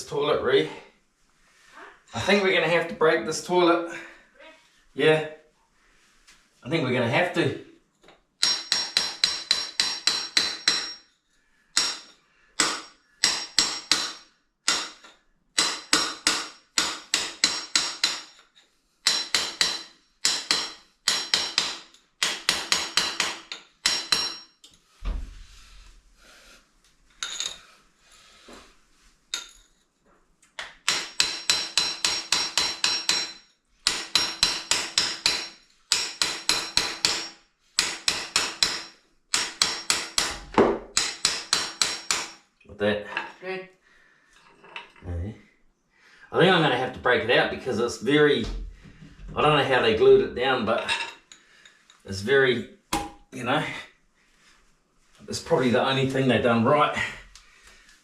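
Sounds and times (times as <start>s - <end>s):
hammer ringing on steel chisel: 8.4s - 11.2s, 11.8s - 14.9s, 19.0s - 24.6s, 30.9s - 40.3s
low thump: 25.0s - 25.4s.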